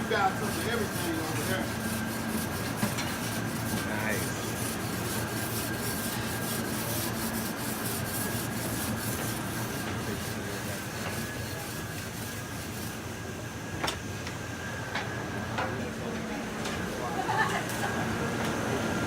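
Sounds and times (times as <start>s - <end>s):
rubbing and scraping: 0.0s - 13.0s
restaurant background noise: 0.0s - 19.0s.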